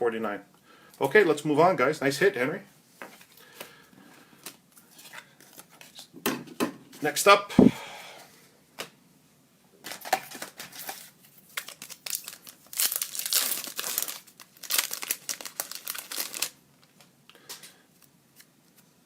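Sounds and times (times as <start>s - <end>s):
card pack wrapper crinkling and tearing: 9.9s - 17.1s.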